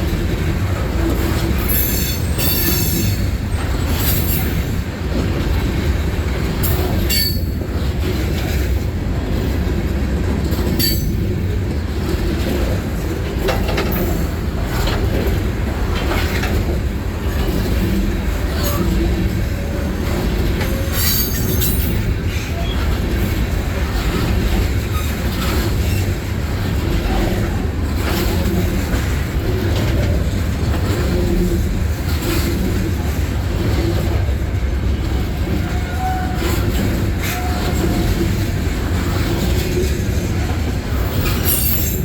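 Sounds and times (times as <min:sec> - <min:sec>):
freight train rumbling: 0:00.0 - 0:42.0
train wheel clicks: 0:00.0 - 0:42.0
train wheel squeals: 0:01.3 - 0:04.8, 0:06.6 - 0:07.9, 0:10.7 - 0:11.3, 0:18.4 - 0:23.3, 0:23.9 - 0:27.5, 0:35.3 - 0:38.4, 0:39.0 - 0:42.0.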